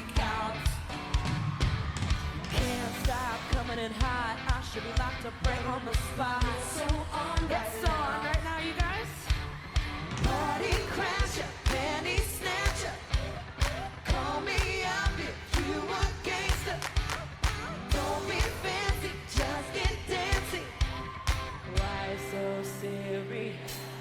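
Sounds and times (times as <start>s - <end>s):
pop song with singing: 0.0s - 24.0s.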